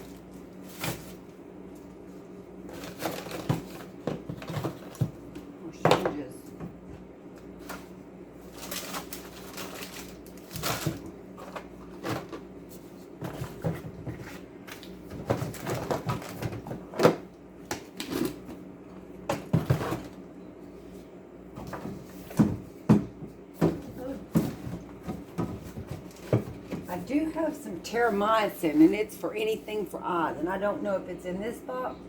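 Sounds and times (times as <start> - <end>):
supplies clattering and rustling: 2.7 - 18.6, 19.2 - 20.2, 21.5 - 27.2.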